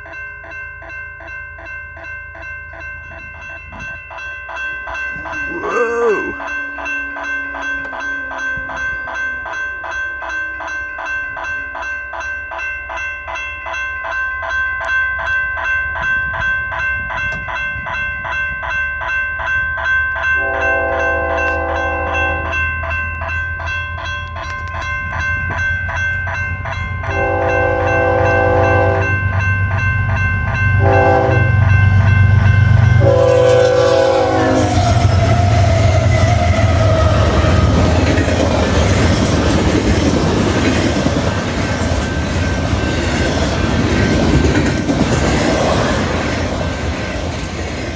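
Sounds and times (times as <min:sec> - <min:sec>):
train rumbling past: 0:00.0 - 0:13.5, 0:14.9 - 0:47.9
electronic crossing bells ringing: 0:00.0 - 0:45.6
train horn blasts: 0:06.4 - 0:09.2, 0:20.4 - 0:22.6, 0:27.0 - 0:29.2, 0:30.8 - 0:31.7, 0:33.0 - 0:37.3.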